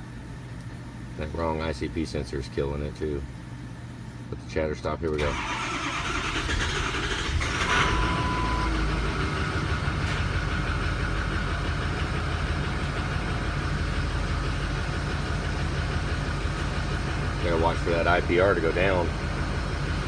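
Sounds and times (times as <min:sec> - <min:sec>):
diesel truck engine idling: 0:05.2 - 0:20.0
short steady beep: 0:07.7 - 0:08.8.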